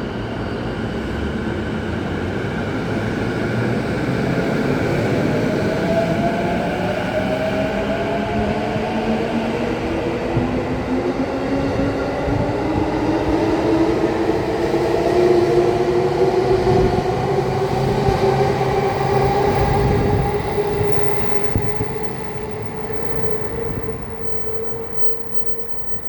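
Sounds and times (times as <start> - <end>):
wheels rumbling on rails: 15.5 - 26.0
train motors whining: 18.7 - 26.0.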